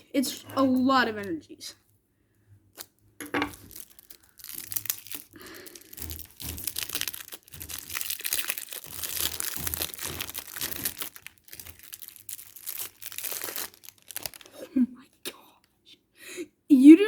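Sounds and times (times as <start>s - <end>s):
card packaging crinkling and tearing: 2.8s - 14.6s.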